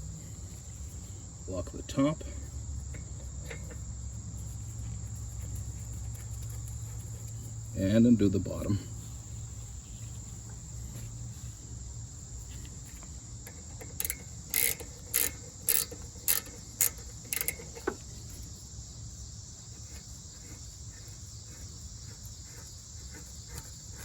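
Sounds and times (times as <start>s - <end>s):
crickets chirring: 0.0s - 24.0s
ratchet wrench clicking: 13.4s - 18.0s.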